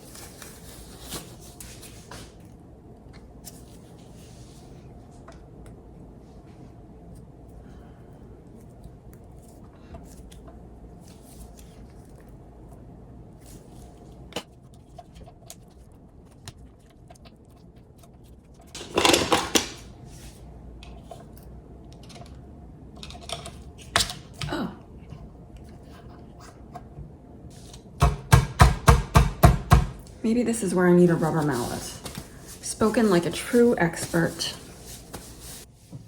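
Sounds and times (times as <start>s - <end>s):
metal mixer parts clicking and rattling: 18.7s - 19.8s.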